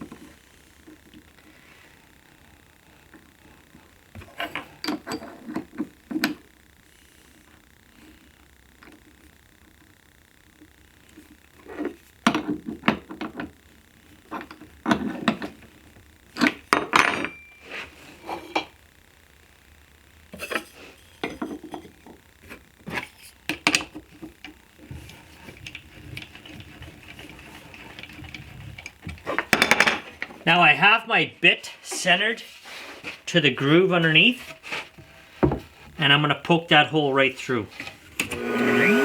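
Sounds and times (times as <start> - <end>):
faint steady hum: 0.0 - 39.0
wooden parts knocking on workbench: 29.4 - 30.2, 35.4 - 35.7.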